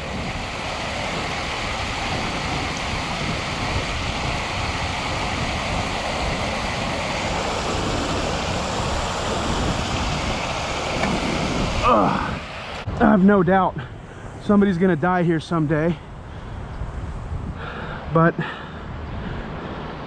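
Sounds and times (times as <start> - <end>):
water rushing over spillway: 0.0 - 14.7.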